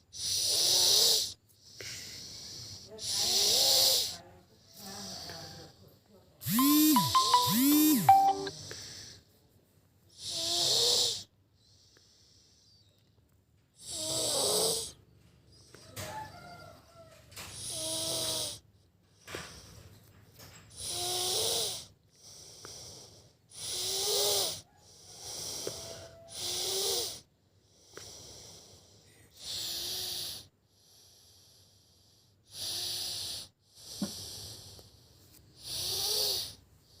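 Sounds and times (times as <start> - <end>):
child snoring with wheeze: 0.0 - 5.8, 10.1 - 12.8, 13.8 - 15.1, 17.4 - 19.8, 20.7 - 37.0.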